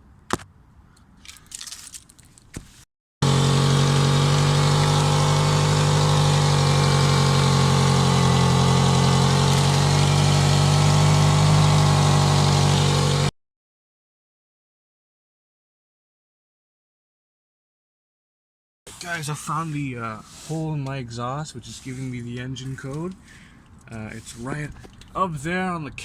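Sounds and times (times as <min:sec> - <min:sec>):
hissy car engine idling: 0:03.2 - 0:13.3.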